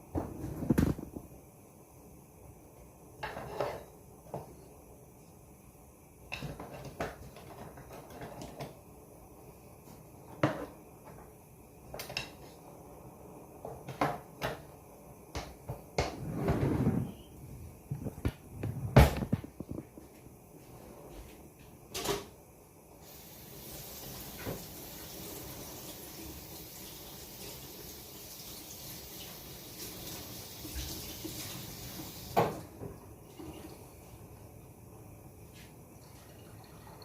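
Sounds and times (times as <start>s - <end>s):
scraping rustle: 16.2s - 17.2s.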